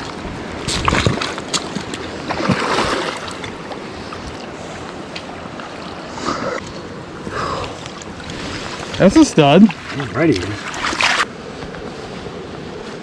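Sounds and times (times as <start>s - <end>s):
water splashing: 0.0s - 11.3s
creek water rushing: 0.0s - 13.0s.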